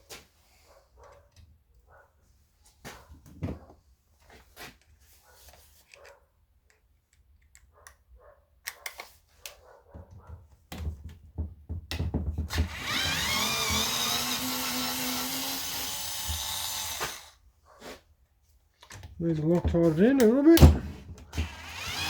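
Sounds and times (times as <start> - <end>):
drill-driver whining: 12.5 - 17.4, 21.3 - 22.0.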